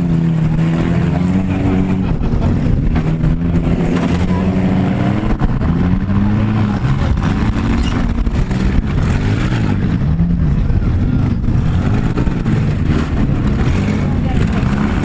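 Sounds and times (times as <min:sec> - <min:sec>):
car engines revving: 0:00.0 - 0:15.0.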